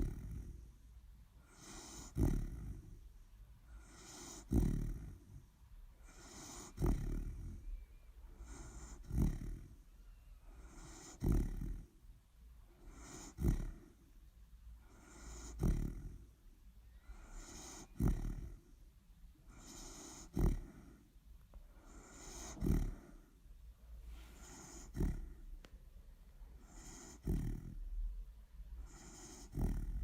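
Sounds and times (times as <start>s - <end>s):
dog snoring: 0.0s - 0.8s, 1.4s - 12.0s, 12.7s - 14.1s, 14.8s - 16.4s, 17.0s - 18.8s, 19.4s - 21.1s, 21.7s - 23.4s, 24.1s - 25.6s, 26.5s - 28.1s, 28.7s - 30.0s.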